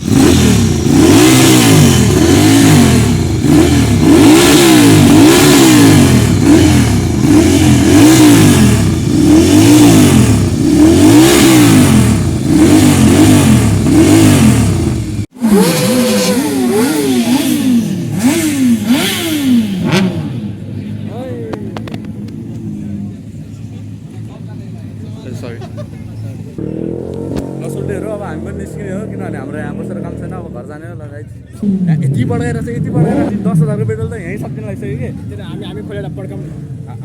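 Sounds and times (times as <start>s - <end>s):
motorbike engines revving: 0.0s - 37.0s.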